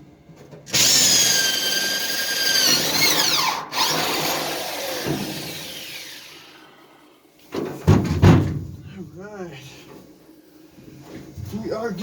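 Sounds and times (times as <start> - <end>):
power tool high whine: 0.7 - 7.2.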